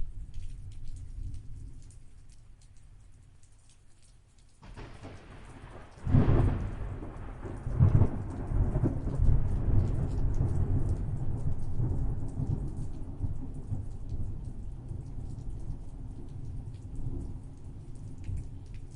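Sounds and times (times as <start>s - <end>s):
rain falling: 0.0s - 18.9s
thunder crack and rumble: 4.6s - 18.6s.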